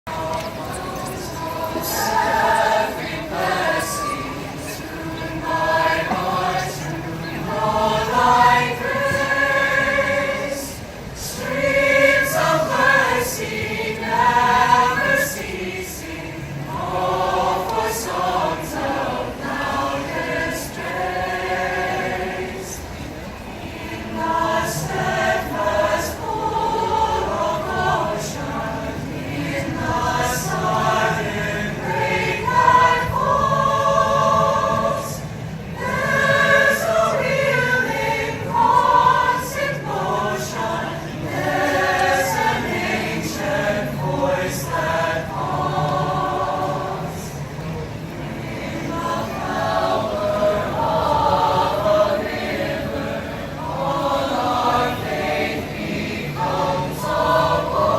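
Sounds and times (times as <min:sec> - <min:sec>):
choir singing: 0:00.0 - 0:57.9.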